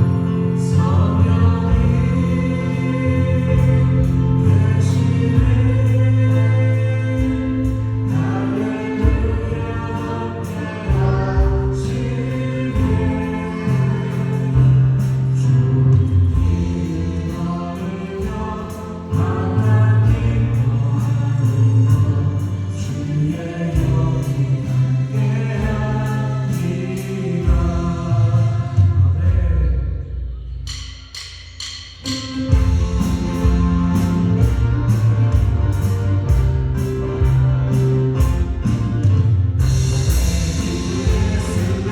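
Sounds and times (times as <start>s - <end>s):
voices singing together: 0.0s - 30.2s, 40.0s - 41.9s
keyboards: 0.0s - 30.3s, 32.0s - 41.9s
acoustic guitar: 0.0s - 30.6s, 32.1s - 41.9s
drums and cymbals: 1.0s - 41.9s.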